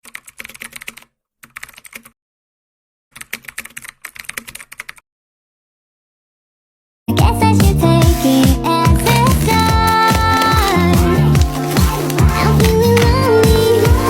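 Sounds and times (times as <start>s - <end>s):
keyboard typing clicks: 0.0s - 2.1s.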